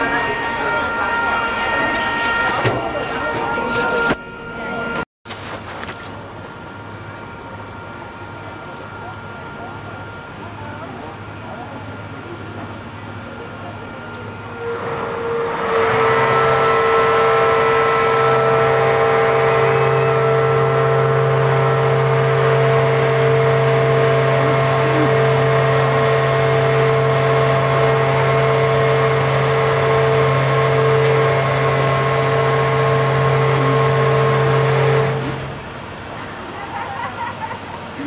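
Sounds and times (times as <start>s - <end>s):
boat horn blast: 0.0s - 5.0s, 5.8s - 38.0s.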